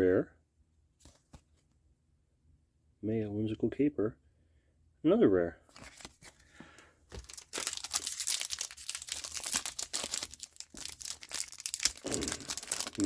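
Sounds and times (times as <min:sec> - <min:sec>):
foil wrapper crinkling and tearing: 0:07.1 - 0:13.0.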